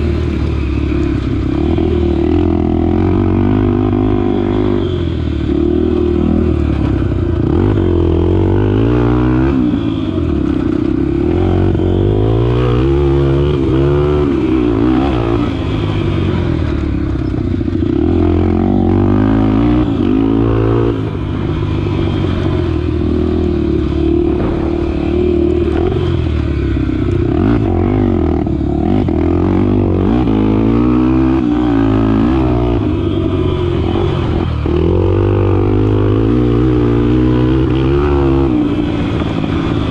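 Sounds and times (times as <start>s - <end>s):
dirt bike engine revving: 0.0s - 39.9s.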